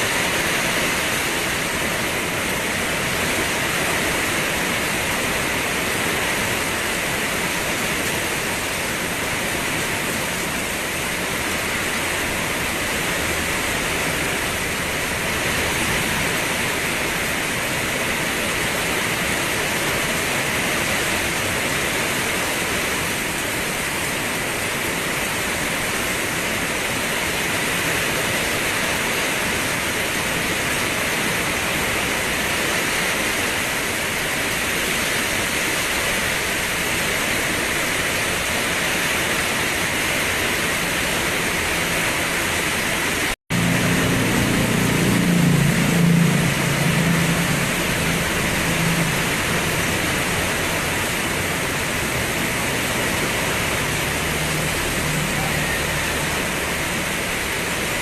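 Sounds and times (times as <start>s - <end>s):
steady rain hiss: 0.0s - 58.0s
low rumble: 43.5s - 58.0s.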